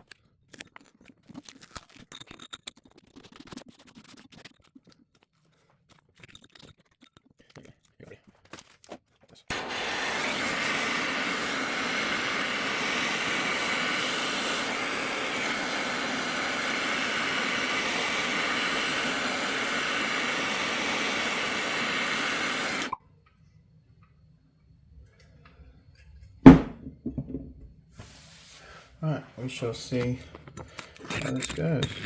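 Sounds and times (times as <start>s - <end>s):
gas torch flame hissing: 9.5s - 23.0s.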